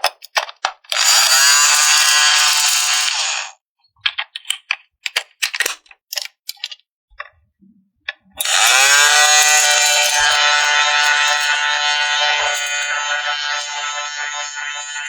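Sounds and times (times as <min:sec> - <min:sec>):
plastic toy parts clicking: 0:00.0 - 0:03.3, 0:04.0 - 0:07.4, 0:08.1 - 0:11.5.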